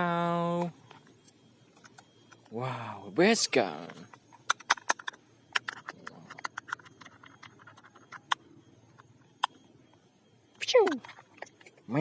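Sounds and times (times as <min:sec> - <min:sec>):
plastic toy guns clicking: 0:04.4 - 0:08.4.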